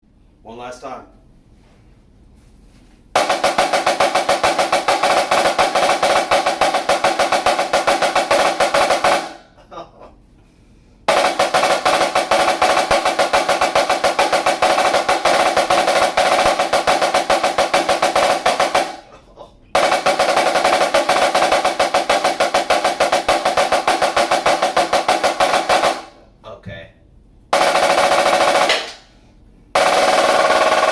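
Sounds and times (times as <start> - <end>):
snare drum rolls: 3.2 - 9.5, 11.1 - 19.1, 19.8 - 26.2, 27.5 - 30.9.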